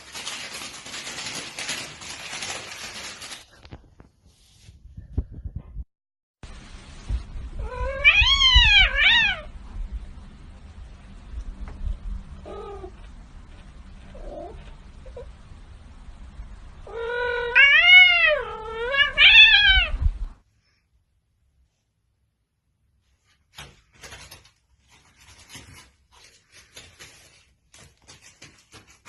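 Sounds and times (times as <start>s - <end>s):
cat yowling: 7.6s - 9.5s, 16.8s - 20.0s.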